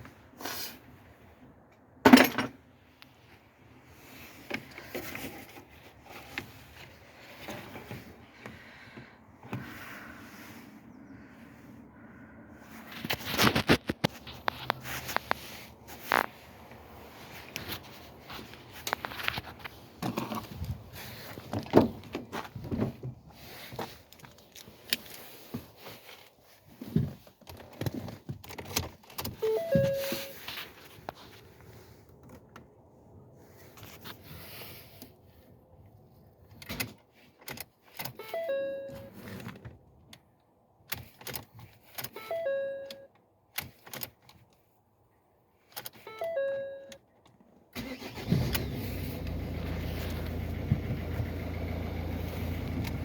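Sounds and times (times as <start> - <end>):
car warning chime: 29.4 - 30.4, 38.2 - 39.1, 42.2 - 43.1, 46.1 - 47.0.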